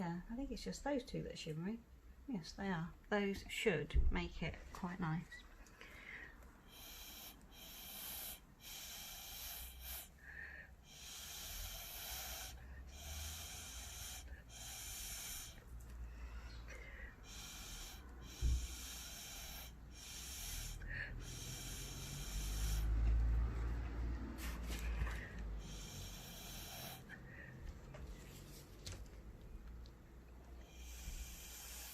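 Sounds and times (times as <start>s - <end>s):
breath puffs through a straw: 5.9s - 15.7s, 16.5s - 23.6s, 24.2s - 27.6s, 30.6s - 31.9s.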